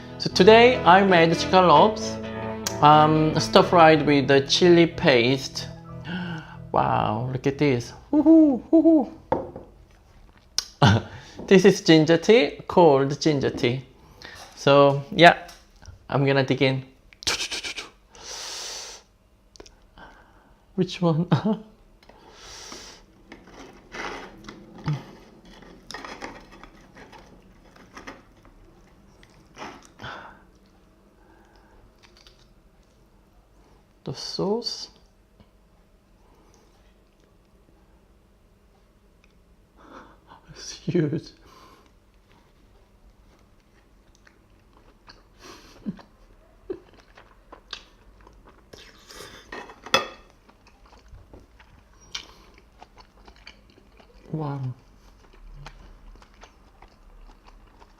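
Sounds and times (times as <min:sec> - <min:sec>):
person chewing: 0:22.7 - 0:33.0, 0:43.2 - 0:49.5, 0:50.2 - 0:57.9.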